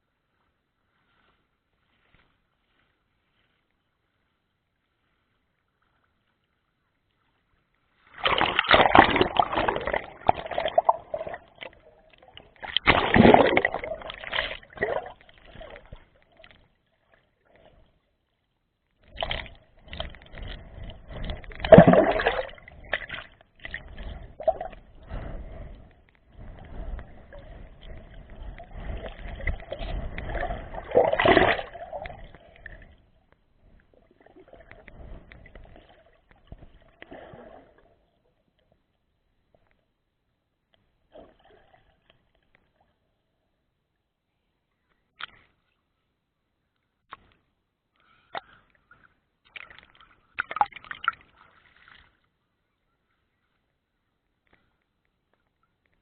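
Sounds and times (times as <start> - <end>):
sea water splashing: 7.9 - 38.3, 48.1 - 52.2.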